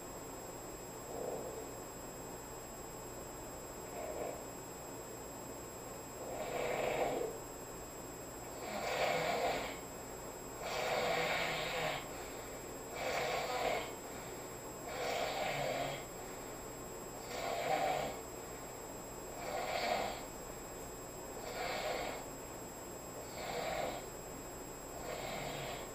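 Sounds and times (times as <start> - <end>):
man snoring: 3.9 - 4.4, 6.2 - 7.4, 8.5 - 9.8, 10.6 - 12.2, 12.9 - 14.0, 14.8 - 16.1, 17.2 - 18.2, 19.3 - 20.3, 21.4 - 22.3, 23.2 - 24.1, 25.0 - 25.9.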